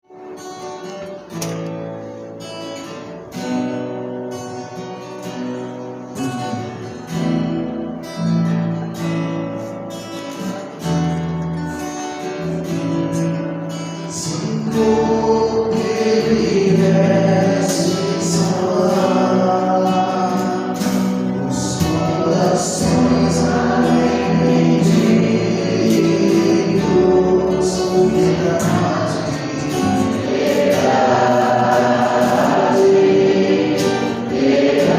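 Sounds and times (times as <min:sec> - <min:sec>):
guitar-led worship music: 0:00.0 - 0:34.9
person singing: 0:14.1 - 0:34.9.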